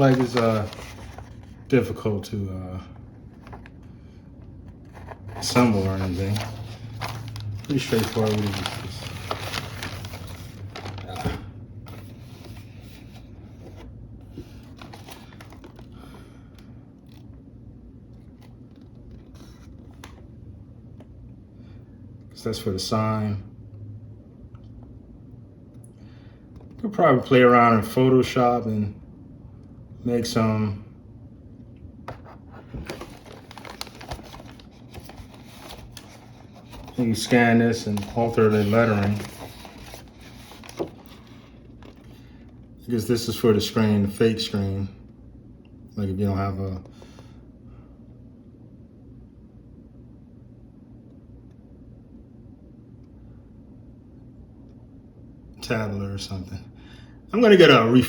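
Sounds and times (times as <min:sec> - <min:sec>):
plastic parts rustling and scraping: 0:00.0 - 0:01.6, 0:04.8 - 0:15.9, 0:32.1 - 0:42.2.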